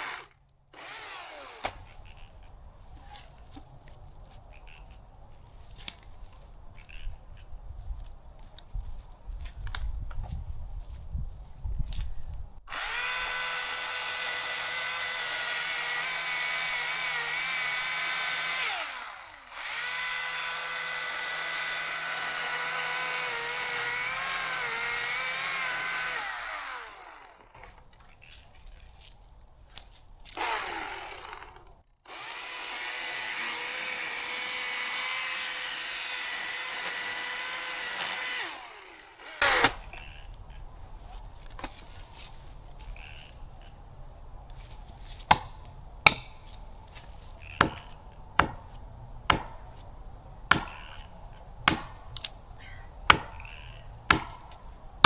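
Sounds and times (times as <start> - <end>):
chainsaw cutting tree: 0.0 - 1.9, 12.7 - 27.8, 30.3 - 40.0, 45.3 - 46.3, 47.5 - 49.6, 50.5 - 52.0, 53.1 - 54.7.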